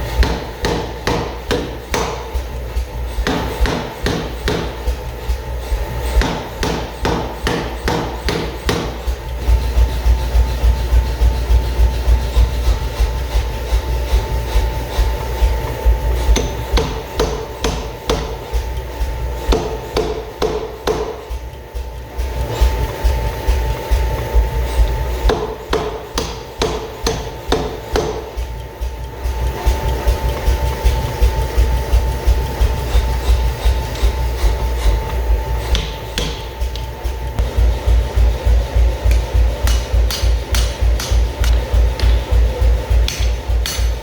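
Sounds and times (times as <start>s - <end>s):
low hum: 26.4s - 44.0s.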